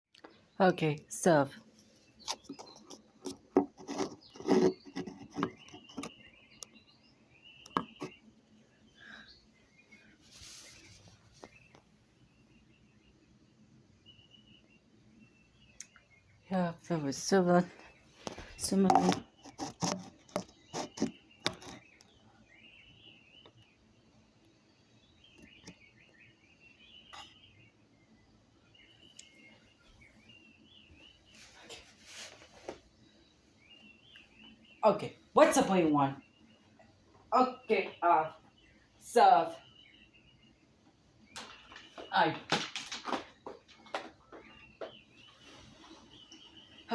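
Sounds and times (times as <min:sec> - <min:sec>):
short scraping rubs: 0:02.1 - 0:06.2
clicks and knocks of hard objects: 0:41.3 - 0:45.0.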